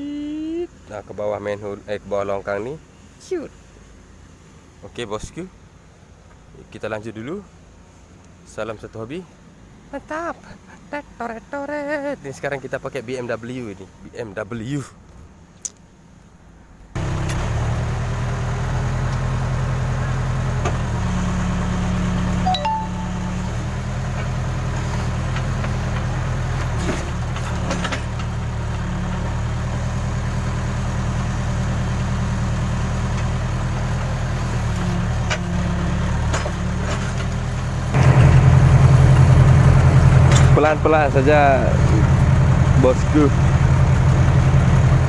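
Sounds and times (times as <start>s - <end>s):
diesel engine idling: 17.0s - 27.4s, 37.4s - 45.0s.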